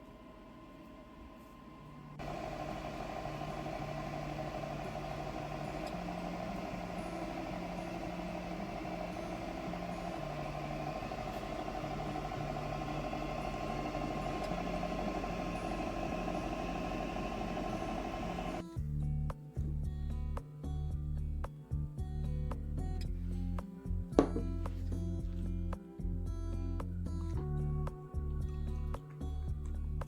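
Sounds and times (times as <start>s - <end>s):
food dehydrator fan whirring: 0.0s - 18.6s.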